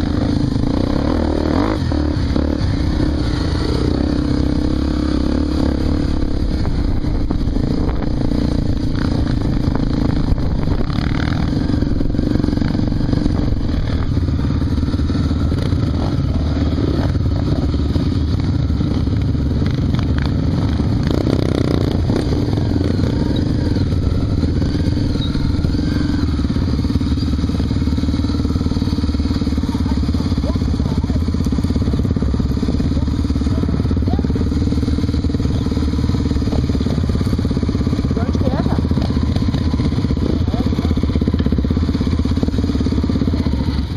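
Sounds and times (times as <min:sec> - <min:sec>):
motorcycle engine running: 0:00.0 - 0:43.9.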